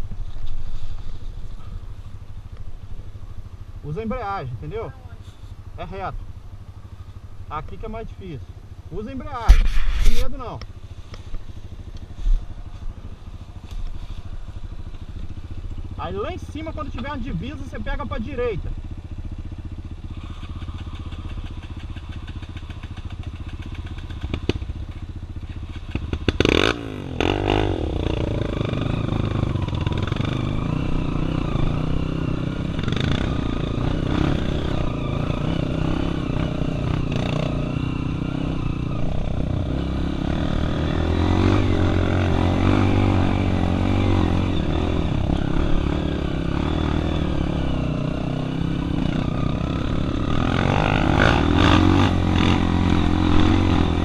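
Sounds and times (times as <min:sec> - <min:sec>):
motorcycles revving: 0:00.0 - 0:54.0
sharp clatter: 0:20.2 - 0:26.6.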